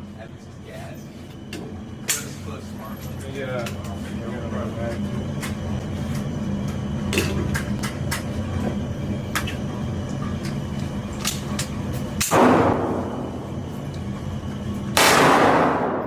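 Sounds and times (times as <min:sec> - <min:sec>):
steady low hum: 0:00.0 - 0:16.0
full-auto gunfire burst: 0:15.0 - 0:16.0.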